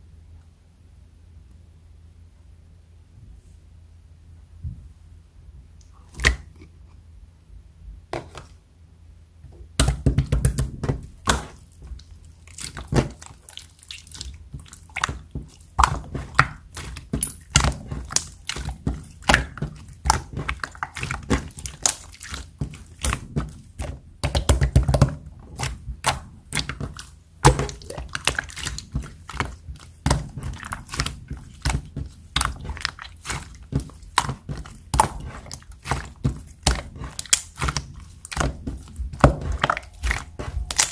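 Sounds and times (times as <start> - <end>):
slime clicking and popping: 24.2 - 40.9.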